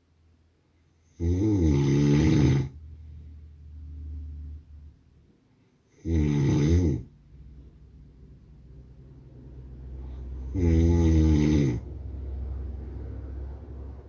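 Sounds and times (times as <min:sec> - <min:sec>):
man snoring: 0:01.1 - 0:02.8, 0:05.9 - 0:07.1, 0:10.4 - 0:11.9
soft breath: 0:09.7 - 0:10.6.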